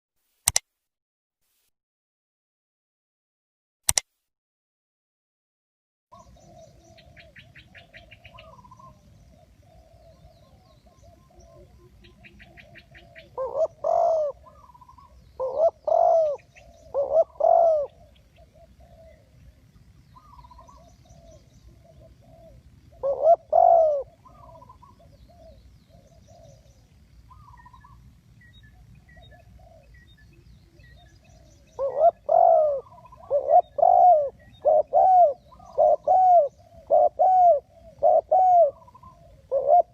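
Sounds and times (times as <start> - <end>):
small birds chirping: 6.1 - 39.9
doves cooing: 6.2 - 39.9.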